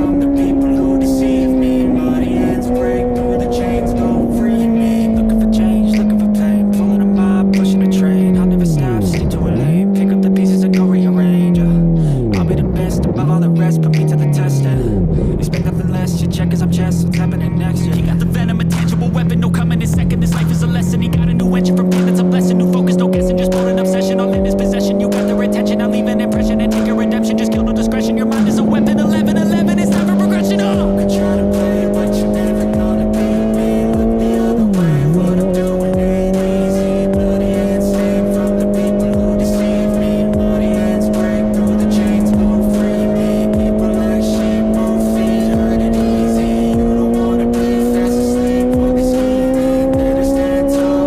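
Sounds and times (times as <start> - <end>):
motorcycle engine cruising: 0.0 - 51.0
rap music: 0.0 - 51.0.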